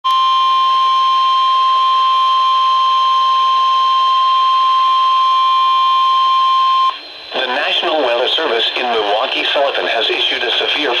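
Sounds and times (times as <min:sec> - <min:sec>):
warning alarm tone: 0:00.1 - 0:07.8
radio static hiss: 0:06.9 - 0:11.0.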